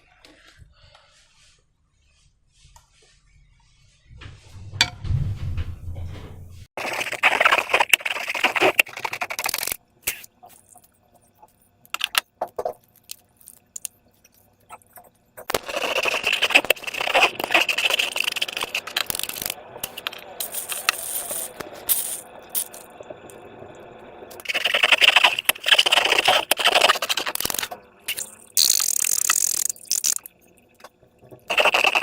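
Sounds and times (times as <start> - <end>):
slime and balloons crackling: 6.8 - 10.8, 15.4 - 22.9, 24.4 - 30.4, 31.5 - 32.0.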